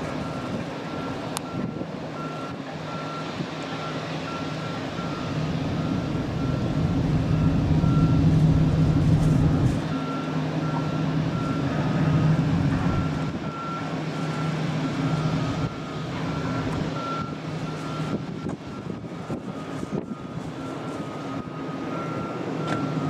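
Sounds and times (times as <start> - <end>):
wind noise: 0.0 - 2.3, 4.9 - 10.0, 15.2 - 22.1
boat engines humming: 0.0 - 23.0.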